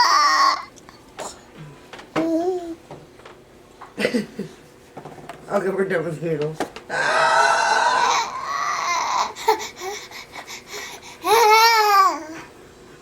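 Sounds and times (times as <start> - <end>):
baby screeching: 6.9 - 9.4.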